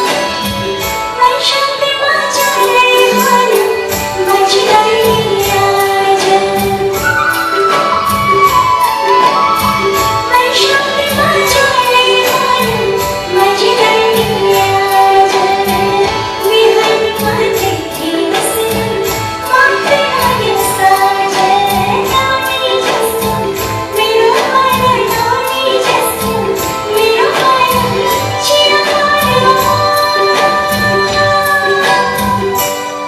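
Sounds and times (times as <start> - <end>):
steady percussion beat: 2.4 - 33.0.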